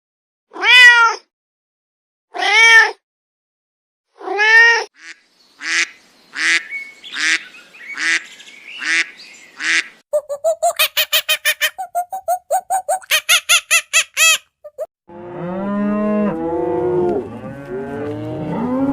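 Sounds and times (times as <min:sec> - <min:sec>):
waterfowl honking and quacking: 0:05.0 - 0:10.0.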